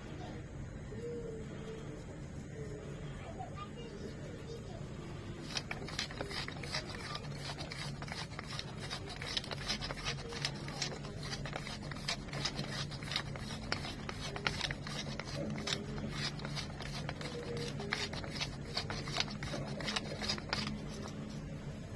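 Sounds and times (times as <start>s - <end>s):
low steady hum: 0.0s - 21.9s
utensils clicking and scraping: 5.3s - 21.6s.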